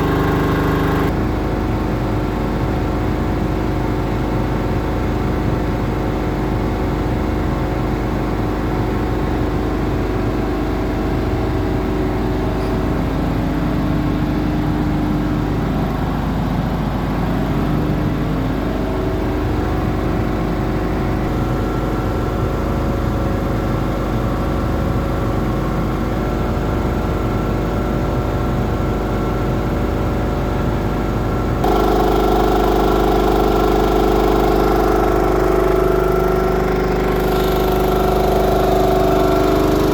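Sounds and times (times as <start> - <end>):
air compressor running: 0.0 - 39.9.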